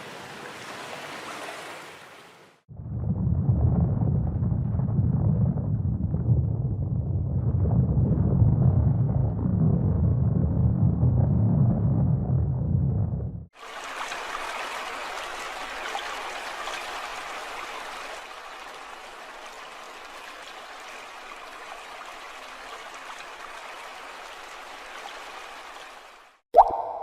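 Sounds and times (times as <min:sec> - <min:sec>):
stream of water flowing: 0:00.0 - 0:02.6, 0:13.6 - 0:27.0
sharp plop: 0:26.5 - 0:27.0.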